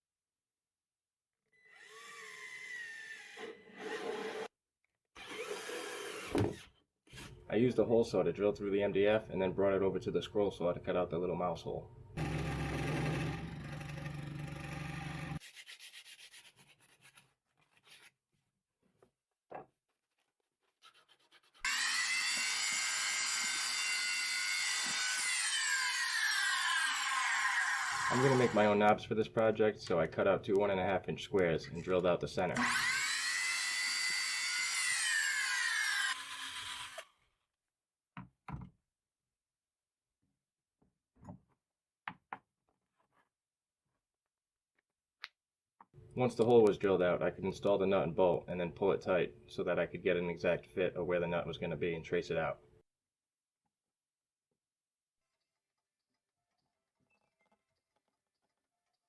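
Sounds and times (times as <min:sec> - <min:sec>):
scroll saw cutting: 0:01.6 - 0:04.5, 0:05.2 - 0:06.7, 0:12.2 - 0:15.5, 0:21.0 - 0:29.0, 0:31.4 - 0:37.2
drill motor whining: 0:05.2 - 0:06.6, 0:12.2 - 0:15.4, 0:21.7 - 0:28.7, 0:32.6 - 0:37.0.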